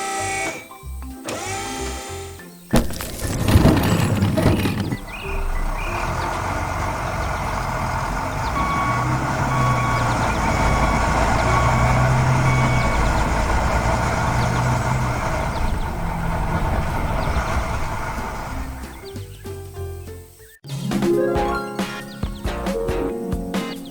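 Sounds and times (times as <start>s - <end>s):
heavy truck engine running: 2.8s - 19.1s
reversing alarm beeping: 8.4s - 13.6s.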